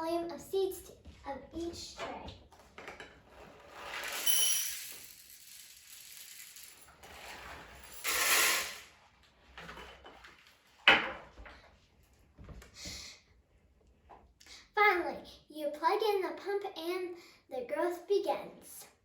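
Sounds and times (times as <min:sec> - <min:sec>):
seeds pouring into plastic trays: 0:03.7 - 0:08.9.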